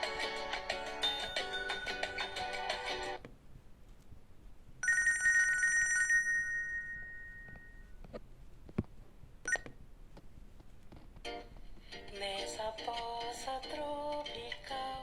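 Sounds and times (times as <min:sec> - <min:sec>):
bell-like ringtone chime: 0:01.0 - 0:02.6, 0:04.8 - 0:08.0.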